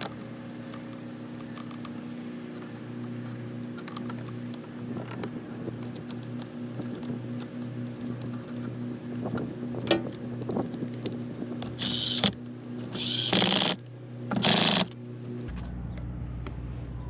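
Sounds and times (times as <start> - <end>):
rapid ratcheting clicks: 10.9 - 15.0.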